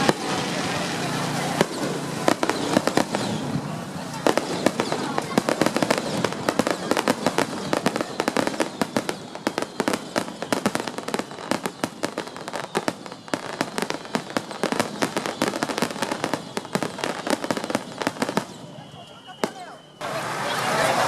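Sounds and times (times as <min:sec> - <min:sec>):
fireworks crackling and popping: 0:00.0 - 0:21.0.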